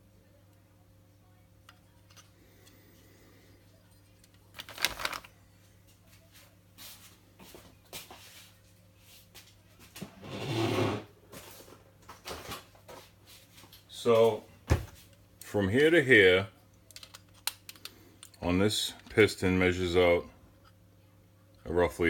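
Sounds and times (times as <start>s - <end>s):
faint steady hum: 0.0s - 22.0s
parts and tool clicking: 16.9s - 18.4s.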